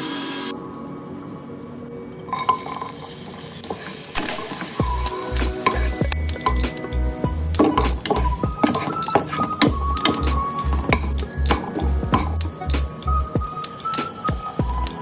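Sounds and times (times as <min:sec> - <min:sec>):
food sizzling in a pan: 0:02.4 - 0:12.4
background music with low beat: 0:04.2 - 0:15.0.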